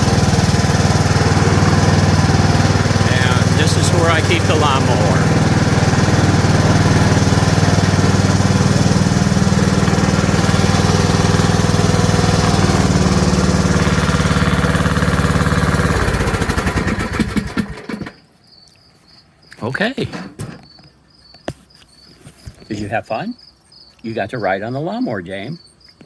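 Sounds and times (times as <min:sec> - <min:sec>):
riding lawn mower engine: 0:00.0 - 0:18.4.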